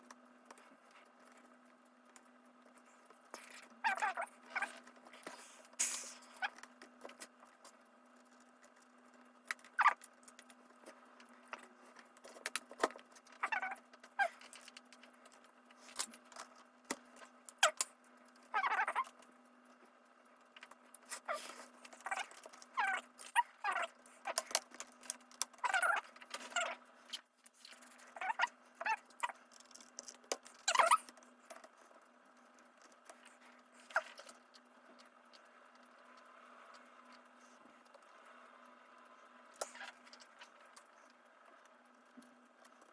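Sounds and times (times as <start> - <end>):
squeaky plastic scrapes: 3.4 - 7.2, 11.6 - 14.9, 18.5 - 19.2, 21.0 - 31.8.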